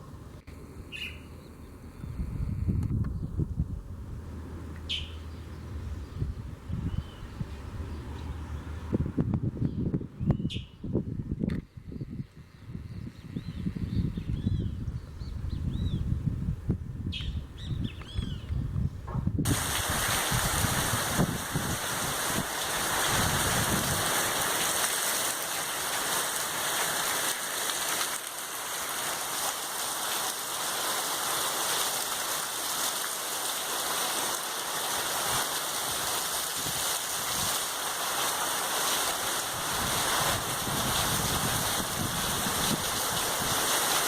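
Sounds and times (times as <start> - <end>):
heavy rain falling: 19.5 - 44.0.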